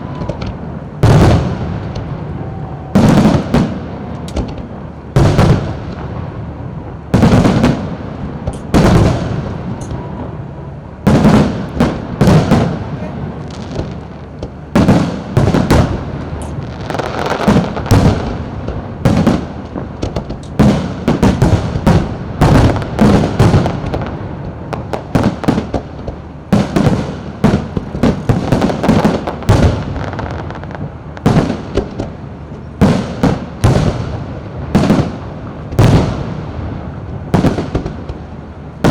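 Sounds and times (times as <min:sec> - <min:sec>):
firework shells bursting: 0:03.0 - 0:06.1, 0:07.2 - 0:10.0, 0:13.8 - 0:32.2.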